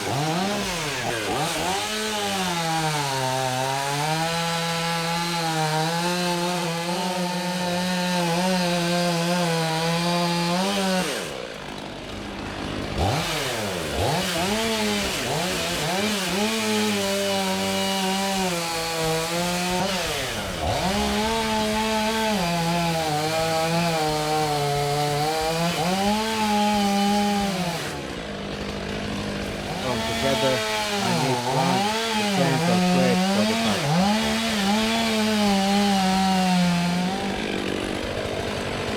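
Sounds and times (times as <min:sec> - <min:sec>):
chainsaw cutting wood: 0:00.0 - 0:38.9.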